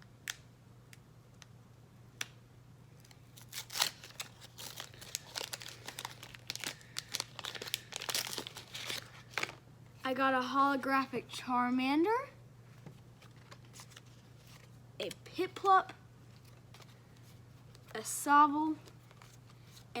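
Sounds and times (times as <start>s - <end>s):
card pack wrapper crinkling and tearing: 3.0s - 9.6s, 13.2s - 14.7s, 18.9s - 19.9s.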